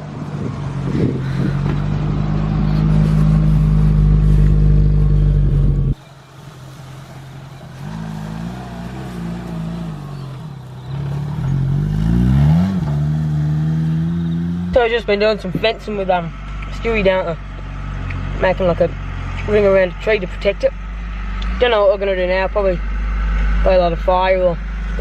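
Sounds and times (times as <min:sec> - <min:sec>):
engine rumbling under load: 0:00.0 - 0:25.0.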